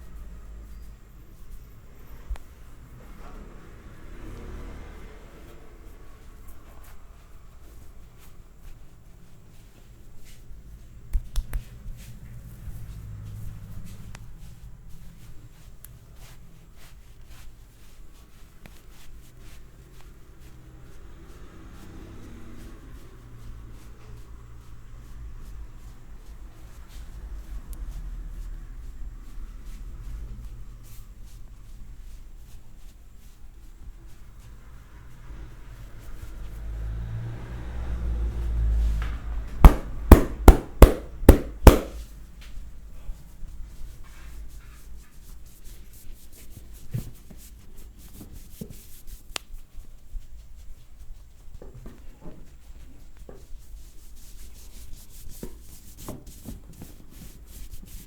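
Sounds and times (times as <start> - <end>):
hands rubbing body: 7.6 - 20.7, 39.6 - 42.1, 43.8 - 51.6, 52.6 - 58.0
percussive massage strikes: 39.1 - 42.1
hands rubbing skin: 39.6 - 42.1, 44.8 - 51.5.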